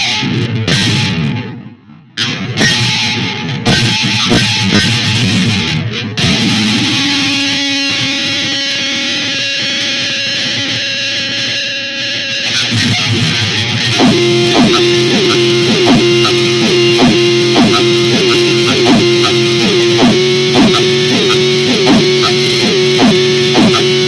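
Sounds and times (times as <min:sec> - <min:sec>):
guitar plucked repeating figure: 0:00.0 - 0:10.8, 0:12.5 - 0:24.0
steady held note: 0:14.0 - 0:24.0.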